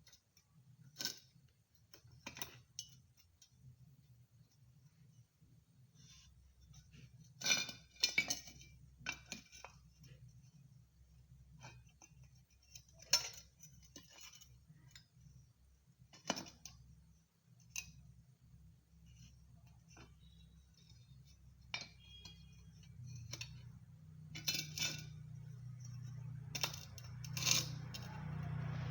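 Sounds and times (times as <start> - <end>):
metal tools clinking: 24.3 - 28.4.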